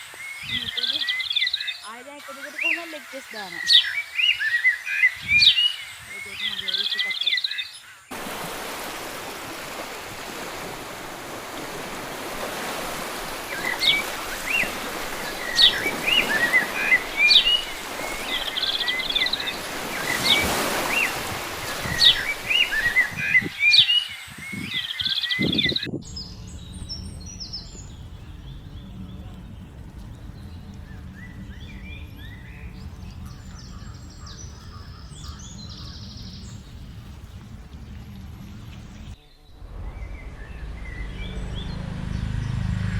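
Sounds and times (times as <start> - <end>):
small birds chirping: 0.0 - 8.1, 9.6 - 39.5
steady rushing noise: 25.8 - 42.9
low hum: 25.9 - 42.9.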